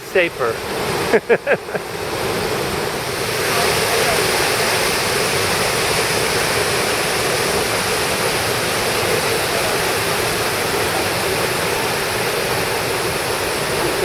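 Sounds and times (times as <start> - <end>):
waterfall and river rushing: 0.0 - 14.0.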